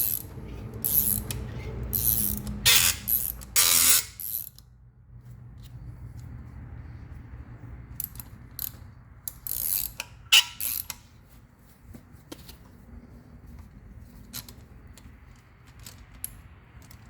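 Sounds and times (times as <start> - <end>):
tool scraping metal: 0.0 - 4.5, 9.5 - 11.0
metallic tool clicks: 0.0 - 4.7, 8.0 - 11.0.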